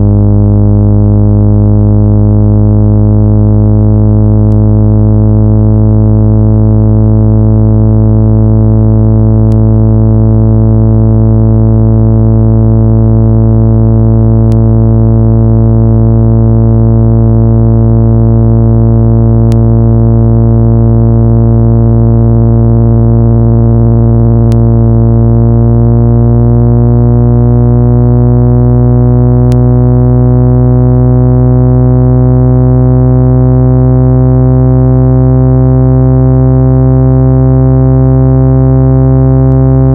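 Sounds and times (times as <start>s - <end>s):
low buzzy electronic tone: 0.0s - 39.9s
faint click: 19.5s - 19.7s.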